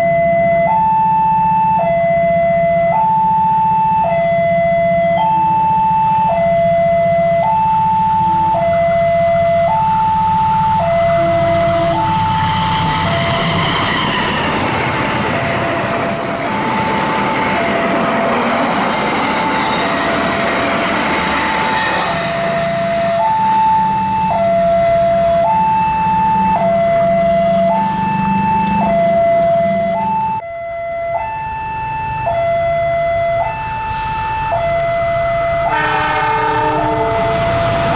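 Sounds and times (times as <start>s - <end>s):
two-tone level crossing alarm: 0.0s - 37.9s
train wheels rushing on rails: 9.2s - 23.6s, 33.8s - 37.9s.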